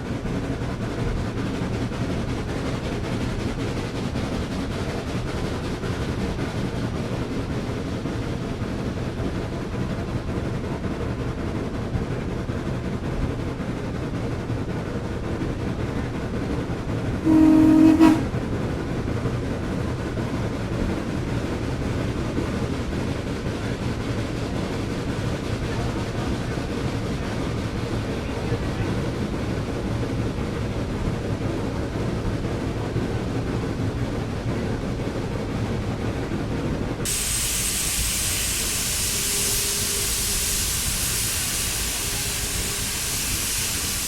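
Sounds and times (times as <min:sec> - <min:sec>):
steam train rumbling: 0:00.0 - 0:44.0
steam locomotive whistle: 0:17.2 - 0:18.3, 0:37.1 - 0:44.0.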